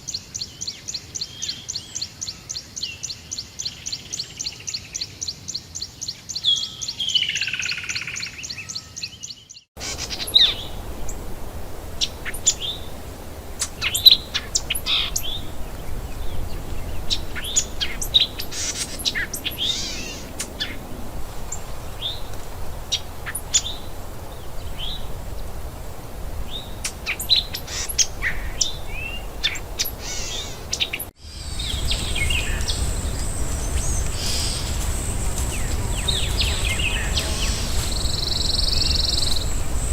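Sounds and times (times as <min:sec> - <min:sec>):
forest background hiss: 0:00.0 - 0:39.9
birds chirping and whistling: 0:06.4 - 0:11.2, 0:12.0 - 0:13.0, 0:13.6 - 0:20.9, 0:21.5 - 0:25.5, 0:26.4 - 0:39.9
steady high whine: 0:31.2 - 0:39.9.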